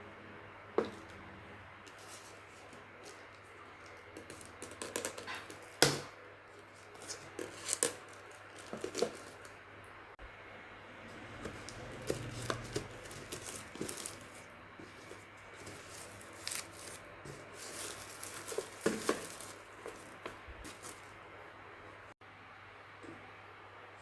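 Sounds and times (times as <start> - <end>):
plastic packaging crinkling and tearing: 6.5 - 9.6, 11.5 - 21.2.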